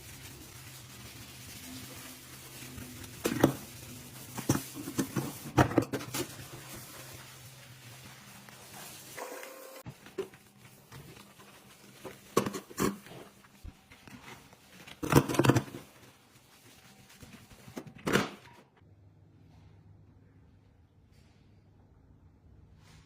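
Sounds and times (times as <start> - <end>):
sink being scrubbed: 0.0 - 17.9.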